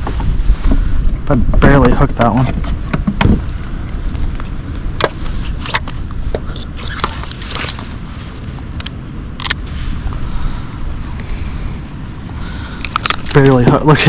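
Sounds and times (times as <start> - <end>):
wind rumbling on microphone: 0.0 - 14.0
handling clicks knocks and rustles: 1.5 - 3.4, 12.8 - 14.0.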